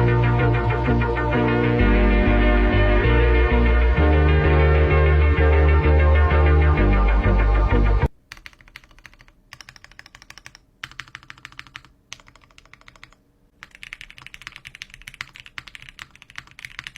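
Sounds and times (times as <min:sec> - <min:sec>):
mechanical keyboard typing: 0:08.2 - 0:16.9.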